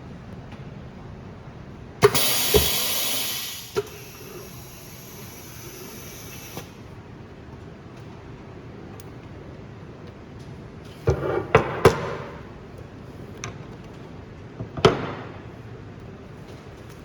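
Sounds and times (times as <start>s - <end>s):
low machine hum: 0.0s - 11.0s
machine thump: 2.0s - 4.0s
loud air hiss: 2.0s - 6.8s
pneumatic valve click: 2.0s - 6.8s.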